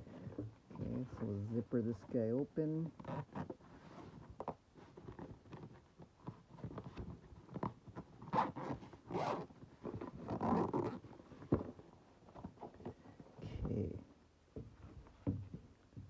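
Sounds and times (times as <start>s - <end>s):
zipper being pulled open: 2.9s - 11.7s.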